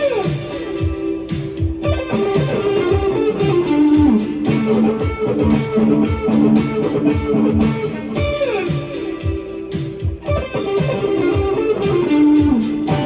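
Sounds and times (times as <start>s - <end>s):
overdriven electric guitar melody: 0.0s - 13.0s
kick drum thumps: 0.8s - 3.2s, 4.0s - 8.5s, 9.2s - 11.6s.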